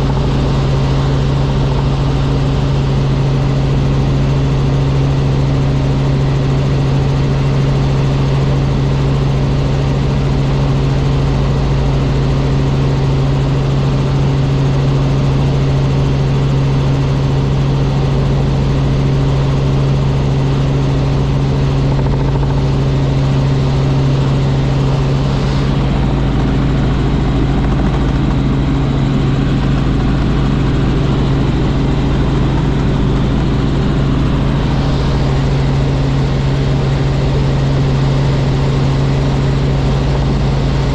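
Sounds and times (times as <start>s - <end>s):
helicopter engine and rotors drone: 0.0s - 40.9s.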